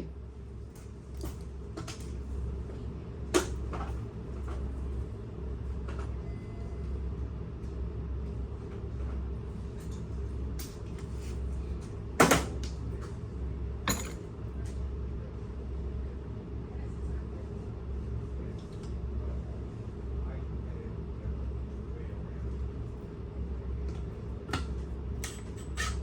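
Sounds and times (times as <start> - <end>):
steady low hum: 0.0 - 26.0
parts clicking and knocking: 13.9 - 14.2.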